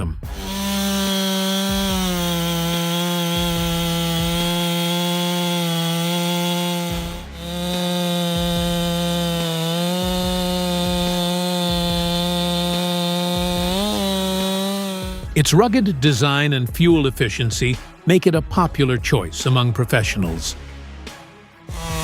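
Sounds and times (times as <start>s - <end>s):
chainsaw cutting wood: 0.2s - 16.3s, 21.7s - 22.0s.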